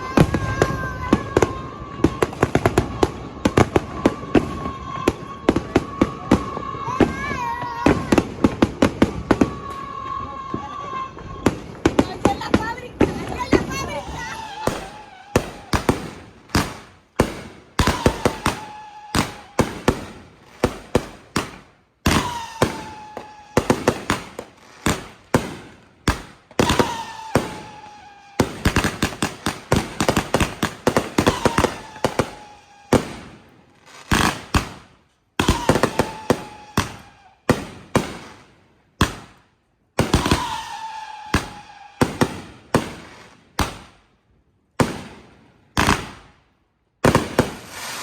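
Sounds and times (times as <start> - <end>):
falling firework whistle: 0.0 - 12.5, 13.1 - 16.2, 17.8 - 20.2, 21.5 - 24.4, 26.6 - 33.4, 35.4 - 37.6, 40.0 - 43.1, 47.3 - 48.0
fireworks bangs and crackles: 0.0 - 48.0.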